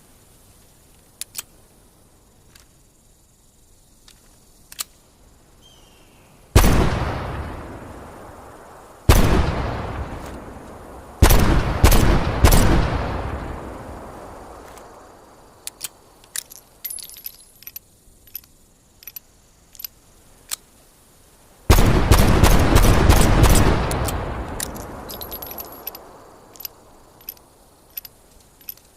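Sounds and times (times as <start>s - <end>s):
light metallic clicks: 0.9s - 1.6s, 4.0s - 5.0s, 15.6s - 20.7s, 23.8s - 28.9s.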